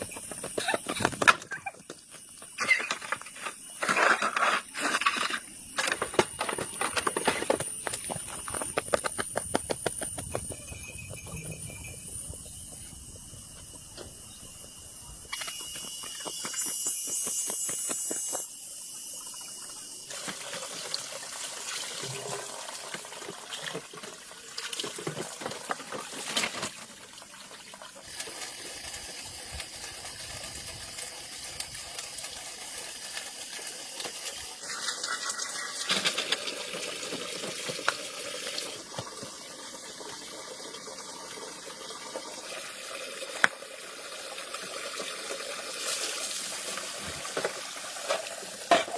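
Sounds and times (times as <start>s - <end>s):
water running and splashing: 17.5s - 48.9s.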